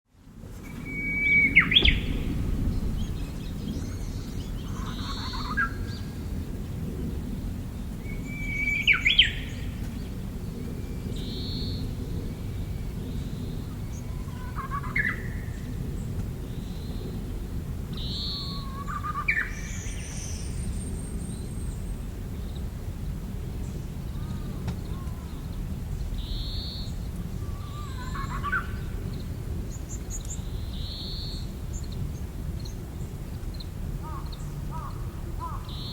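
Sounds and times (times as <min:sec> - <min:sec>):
low background rumble: 0:00.2 - 0:35.9
songbird singing: 0:00.6 - 0:17.3, 0:17.9 - 0:35.9
bird whistling song: 0:00.7 - 0:02.3, 0:08.0 - 0:09.7
high bird calls: 0:00.7 - 0:06.2, 0:26.2 - 0:29.0.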